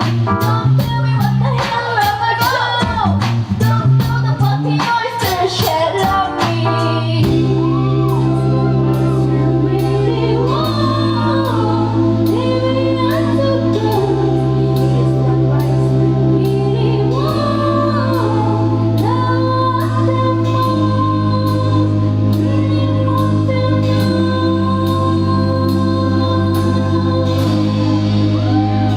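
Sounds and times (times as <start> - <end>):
low keyboard chords: 0.0 - 28.9
female vocal singing: 0.4 - 28.9.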